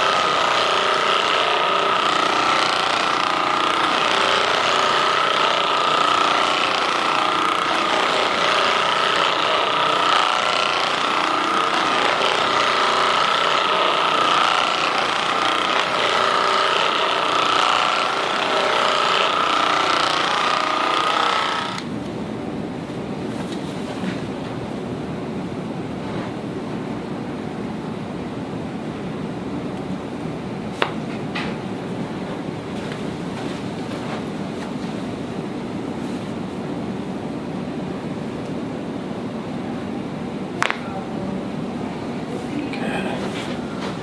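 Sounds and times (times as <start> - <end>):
massage gun buzzing: 0.0 - 21.9.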